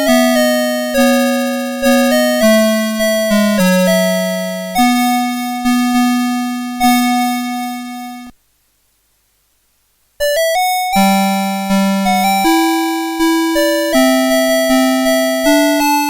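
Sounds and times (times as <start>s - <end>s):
alarm clock electronic melody: 0.0s - 8.3s, 10.2s - 16.0s.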